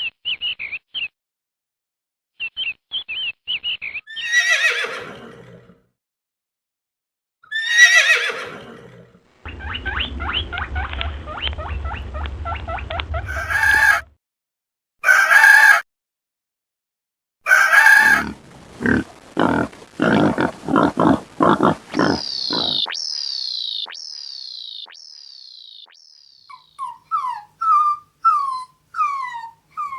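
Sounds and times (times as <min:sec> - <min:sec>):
low hum: 0:09.3 - 0:14.2, 0:18.3 - 0:25.8
falling pitched animal call: 0:09.4 - 0:14.1, 0:17.5 - 0:29.9
chicken clucking: 0:17.5 - 0:22.9
low grunting calls: 0:17.5 - 0:22.9
short pitched animal calls: 0:17.5 - 0:25.0.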